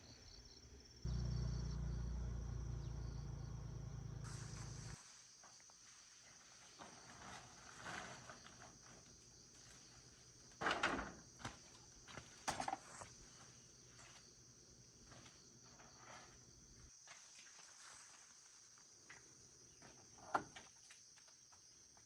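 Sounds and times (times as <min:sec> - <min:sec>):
insects chirring: 0:00.0 - 0:22.0
rustles: 0:03.8 - 0:10.4.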